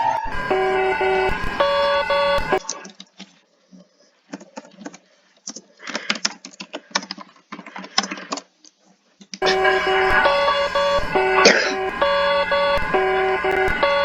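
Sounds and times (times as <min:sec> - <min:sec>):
multi-tone emergency alert alarm: 0:00.0 - 0:02.8, 0:09.4 - 0:14.0
small clicks and taps: 0:04.3 - 0:09.4.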